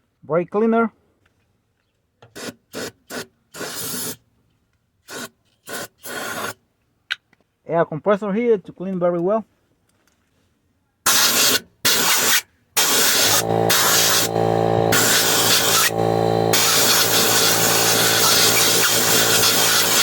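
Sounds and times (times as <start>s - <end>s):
air blow gun hissing: 11.1s - 20.0s
air compressor motor humming: 11.1s - 20.0s.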